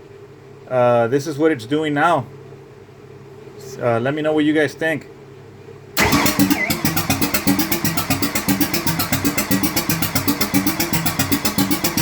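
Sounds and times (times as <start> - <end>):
engine cranking by starter: 6.0 - 12.0.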